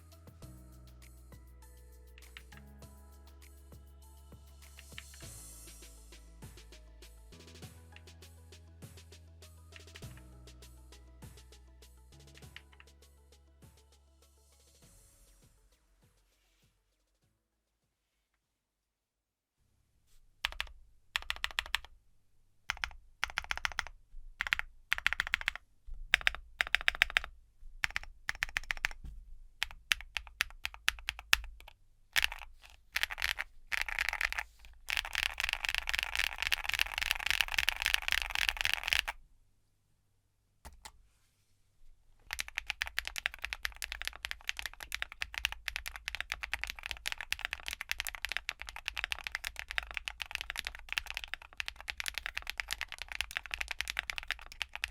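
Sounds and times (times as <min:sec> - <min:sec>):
clacky mechanical keyboard typing: 0:20.4 - 0:21.9, 0:22.7 - 0:29.0, 0:29.6 - 0:39.2, 0:42.3 - 0:54.9.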